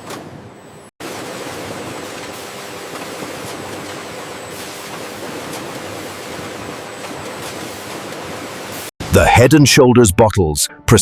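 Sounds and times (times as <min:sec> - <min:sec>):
bottling machinery hiss and hum: 0:00.4 - 0:08.9.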